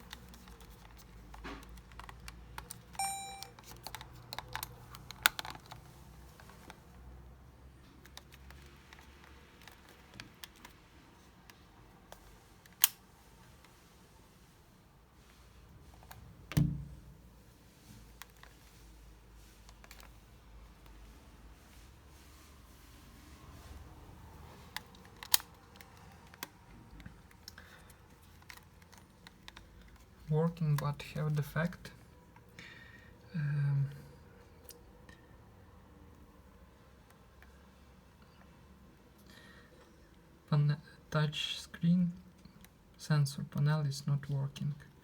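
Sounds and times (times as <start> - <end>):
camcorder being handled: 0.0 - 5.8.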